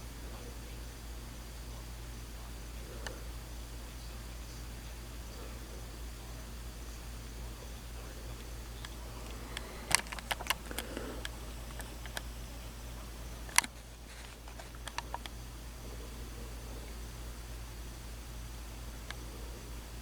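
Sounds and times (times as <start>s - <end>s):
low electrical hum: 0.0s - 20.0s
sharp clicks and taps: 8.4s - 12.4s, 13.4s - 15.4s.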